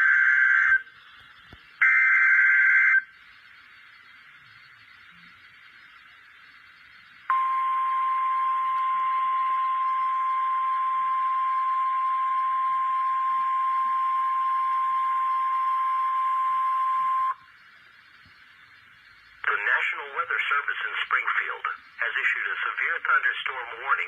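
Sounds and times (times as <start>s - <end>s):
steady alarm tone: 0.0s - 0.9s, 1.8s - 3.1s, 6.8s - 17.6s
faint radio hiss: 0.0s - 24.0s.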